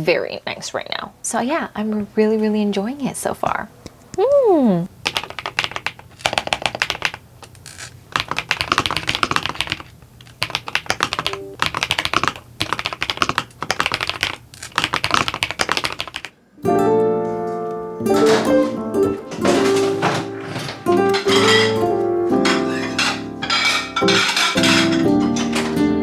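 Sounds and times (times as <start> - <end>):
mechanical keyboard typing: 5.0 - 7.2, 8.1 - 16.3
soft background music: 11.3 - 11.6, 16.6 - 26.0
plucked guitar music: 16.6 - 26.0.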